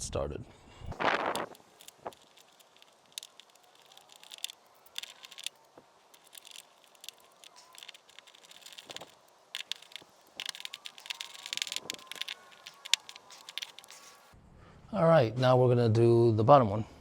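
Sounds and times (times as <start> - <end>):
small metallic clicks: 0.9 - 14.3.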